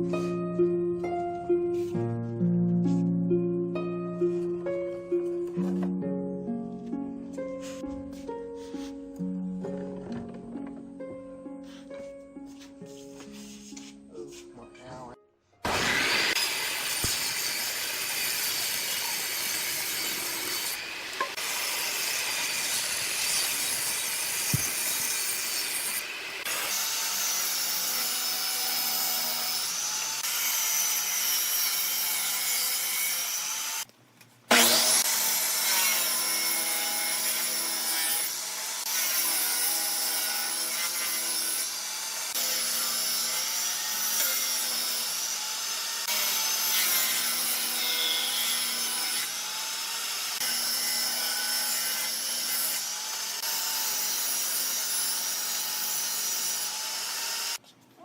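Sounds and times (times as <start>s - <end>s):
power tool rasping wood: 15.6s - 33.9s, 34.5s - 57.6s.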